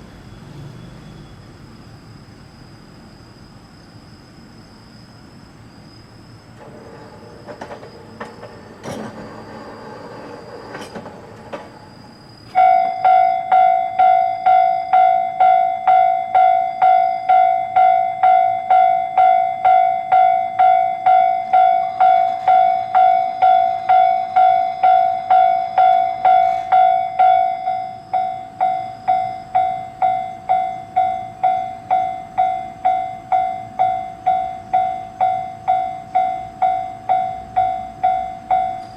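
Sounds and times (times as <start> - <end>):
level crossing warning bell: 11.8 - 38.9.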